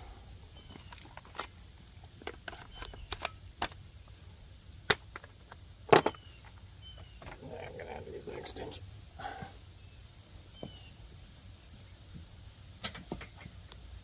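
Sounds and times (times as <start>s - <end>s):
metal tools clinking: 5.9s - 6.6s.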